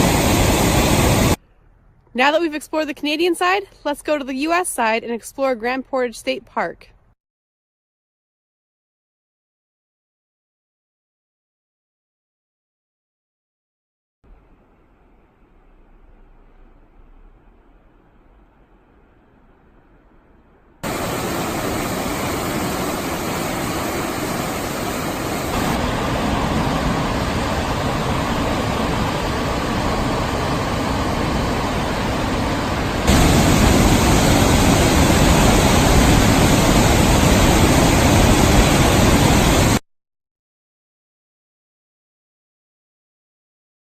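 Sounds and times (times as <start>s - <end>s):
waterfall rushing: 20.8s - 39.8s.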